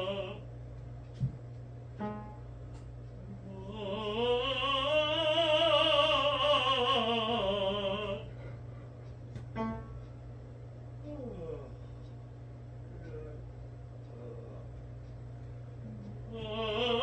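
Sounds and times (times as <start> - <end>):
tenor singing with vibrato: 3.5 - 8.3, 16.3 - 17.0.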